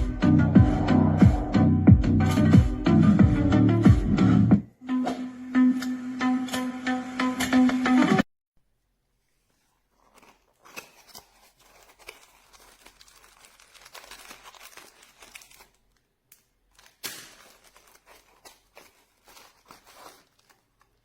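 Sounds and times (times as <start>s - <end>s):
crinkling and rustling: 9.0s - 21.0s.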